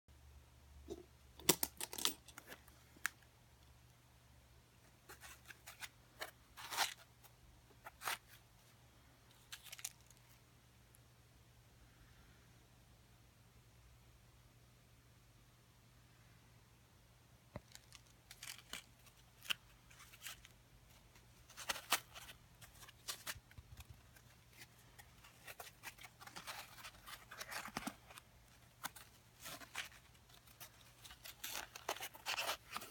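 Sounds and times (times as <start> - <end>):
packaging rustling: 17.6 - 32.9.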